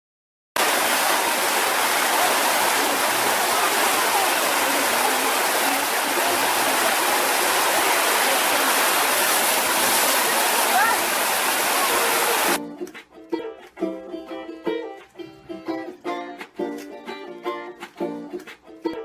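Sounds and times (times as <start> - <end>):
waterfall rushing over rock: 0.6 - 12.6.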